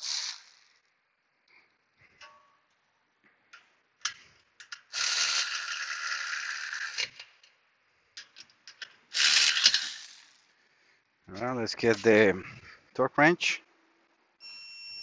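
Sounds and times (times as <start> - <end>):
ratcheting rattle: 4.0 - 7.5, 8.2 - 10.4.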